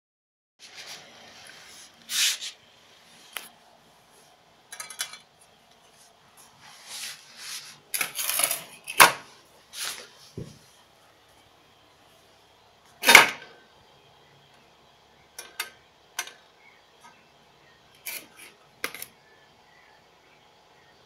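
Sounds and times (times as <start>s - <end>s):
scraping rubs: 0.6s - 3.5s, 5.8s - 8.3s.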